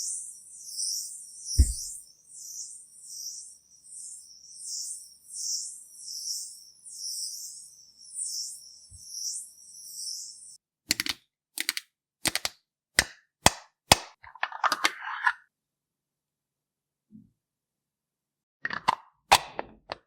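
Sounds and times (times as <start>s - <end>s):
sharp clicks: 10.9s - 12.5s.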